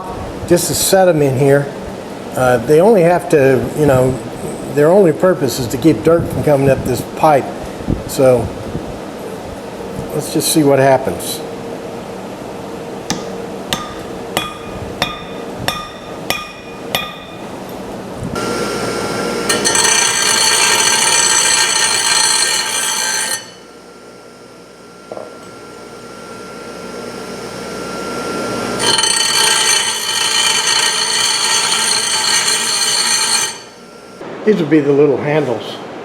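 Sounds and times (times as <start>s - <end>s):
hammer tapping on metal: 13.1s - 17.8s
power tool whining: 18.4s - 23.7s, 25.0s - 34.2s.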